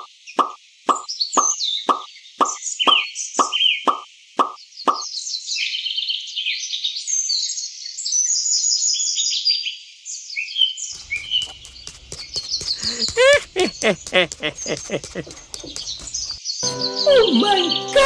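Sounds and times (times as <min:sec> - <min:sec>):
birds chirping: 0:11.0 - 0:16.4.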